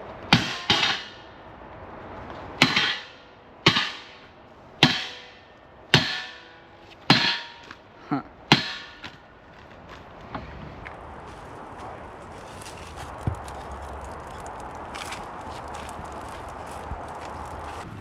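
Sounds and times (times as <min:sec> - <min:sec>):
hammer striking metal: 0:00.3 - 0:01.3, 0:02.6 - 0:07.8, 0:08.5 - 0:09.2.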